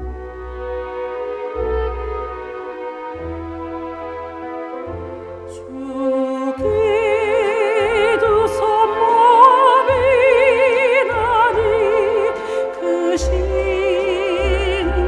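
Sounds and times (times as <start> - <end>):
instrumental accompaniment: 0.0 - 15.0
soprano singing with vibrato: 5.5 - 15.0.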